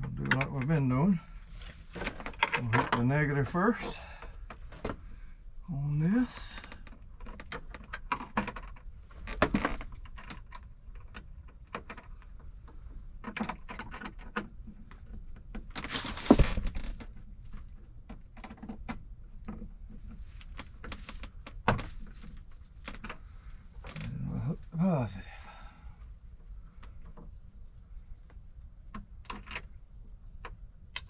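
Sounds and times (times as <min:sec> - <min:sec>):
rustle: 0:12.6 - 0:18.0.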